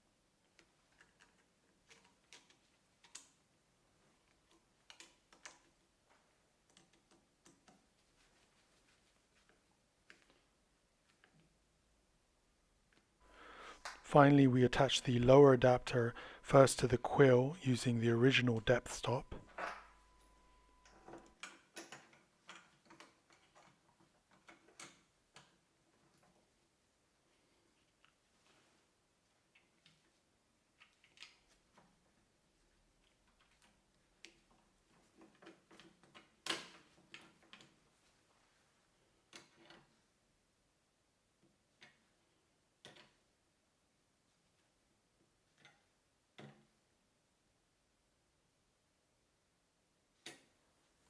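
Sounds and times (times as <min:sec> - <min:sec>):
faint clicks of screws and tool: 0:00.4 - 0:03.5, 0:04.2 - 0:07.9, 0:50.2 - 0:50.5.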